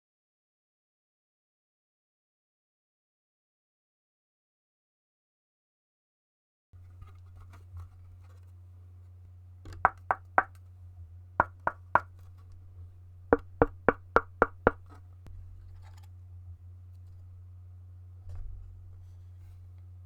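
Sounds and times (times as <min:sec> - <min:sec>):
low steady hum: 0:06.8 - 0:20.0.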